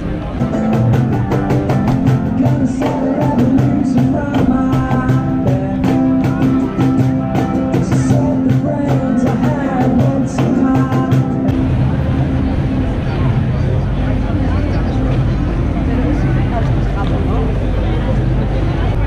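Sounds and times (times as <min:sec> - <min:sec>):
rock music with singing: 0:00.6 - 0:11.6.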